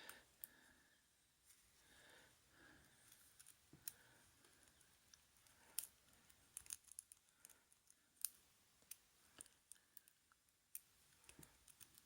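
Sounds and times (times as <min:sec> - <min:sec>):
lock pick clicking and scraping: 0:04.7 - 0:12.0.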